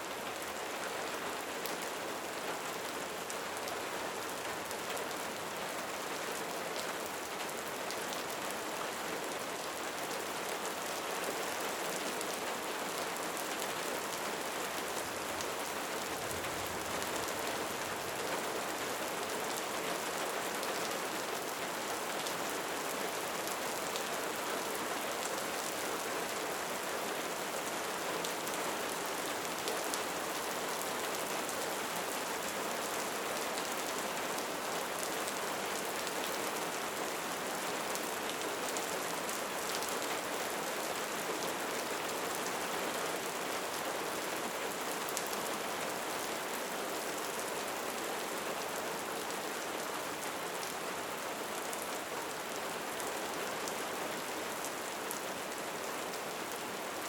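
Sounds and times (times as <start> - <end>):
steady rain hiss: 0.0 - 57.0.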